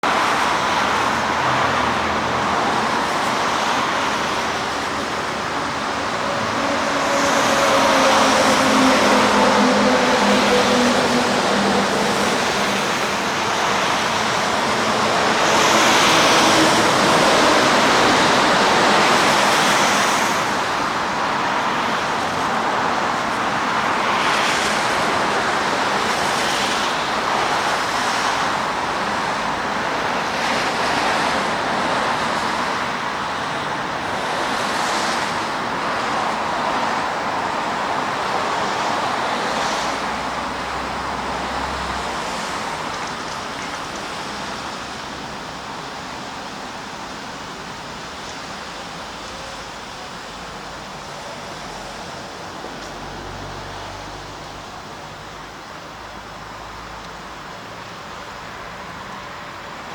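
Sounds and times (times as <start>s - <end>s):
road traffic: 0.0s - 59.9s
vehicle passing: 0.2s - 20.6s.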